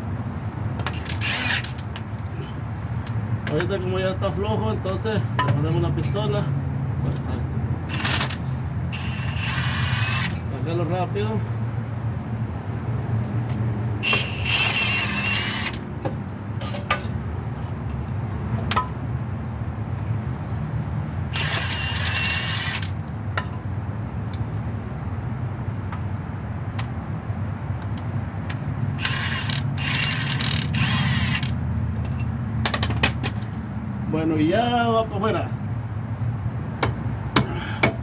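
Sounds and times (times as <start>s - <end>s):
impact gun whining: 0.8s - 1.9s, 7.9s - 10.5s, 14.0s - 15.9s, 21.3s - 23.0s, 29.0s - 31.6s.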